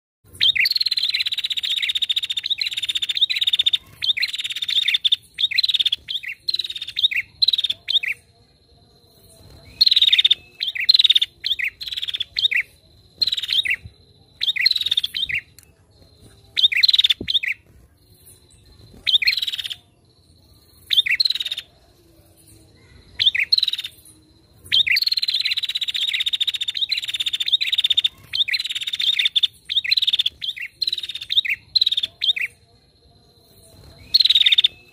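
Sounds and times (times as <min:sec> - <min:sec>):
bird chattering calls: 0:00.4 - 0:08.2, 0:09.7 - 0:15.6.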